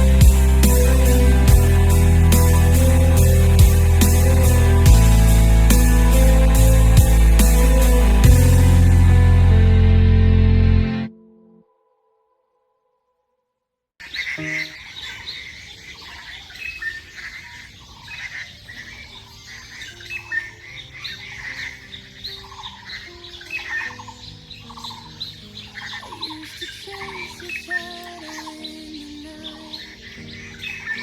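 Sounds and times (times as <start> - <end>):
soft sustained music: 0.0 - 12.4, 18.1 - 31.0
birds chirping and trilling: 14.0 - 31.0.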